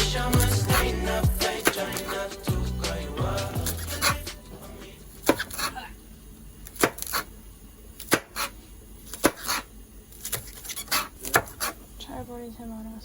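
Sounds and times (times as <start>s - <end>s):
knife chopping on cutting board: 1.5s - 2.2s, 3.6s - 4.4s, 5.2s - 5.7s, 6.8s - 7.3s, 8.1s - 8.5s, 9.1s - 9.6s, 10.3s - 11.8s.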